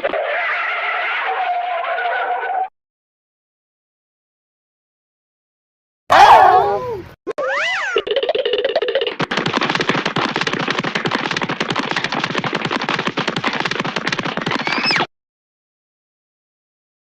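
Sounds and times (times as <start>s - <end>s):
wavering cartoon tone: 6.1s - 8.2s.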